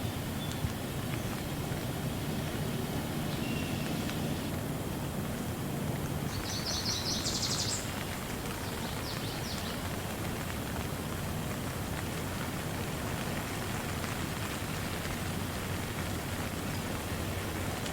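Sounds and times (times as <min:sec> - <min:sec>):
steady rain hiss: 0:00.0 - 0:17.9.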